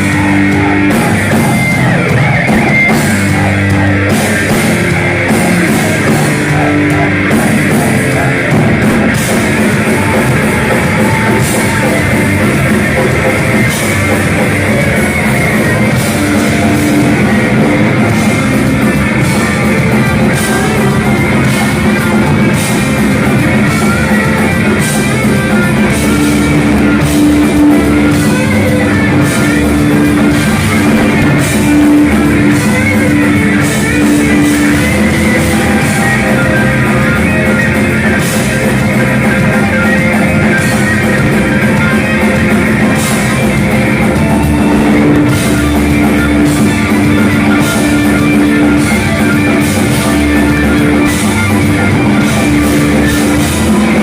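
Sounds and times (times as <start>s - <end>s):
heavy metal band playing live: 0.0s - 54.0s.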